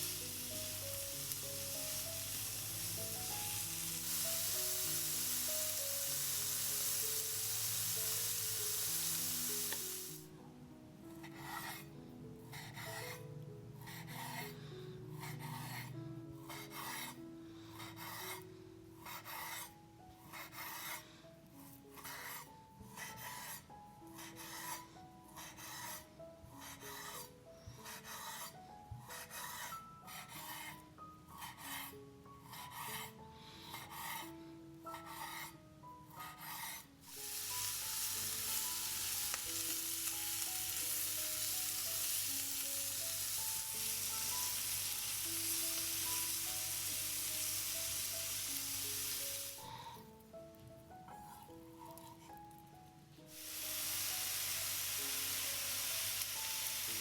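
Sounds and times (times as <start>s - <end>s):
food frying in hot oil: 0.0s - 10.3s, 37.1s - 49.6s, 53.3s - 57.0s
soft background music: 0.0s - 57.0s.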